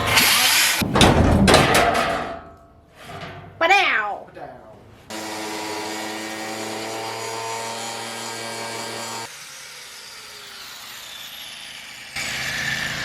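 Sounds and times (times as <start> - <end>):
angle grinder whining: 5.1 - 13.0.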